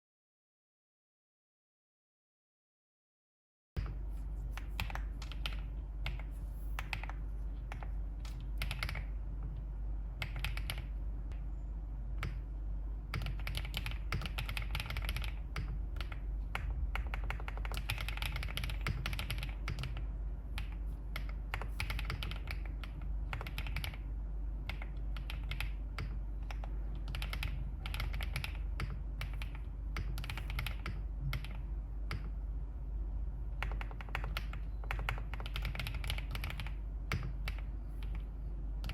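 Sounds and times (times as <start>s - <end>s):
mechanical keyboard typing: 4.6s - 9.2s, 10.2s - 11.0s, 13.1s - 32.4s, 33.6s - 38.9s.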